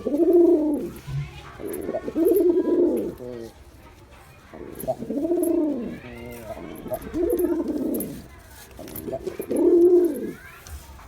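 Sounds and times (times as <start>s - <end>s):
pigeon cooing: 0.0s - 0.9s, 1.6s - 3.4s, 4.8s - 8.2s, 8.8s - 10.4s.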